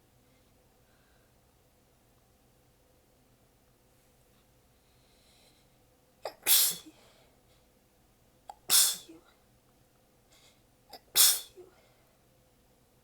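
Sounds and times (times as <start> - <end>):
person sneezing: 6.3 - 7.1, 8.5 - 9.3, 10.9 - 11.8.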